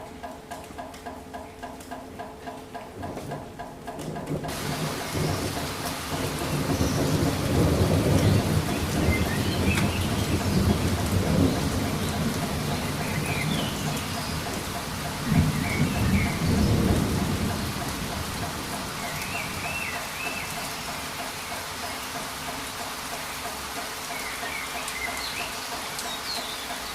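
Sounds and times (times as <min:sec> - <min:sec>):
steady rain falling: 0:00.0 - 0:26.9
rolling thunder: 0:04.4 - 0:20.5.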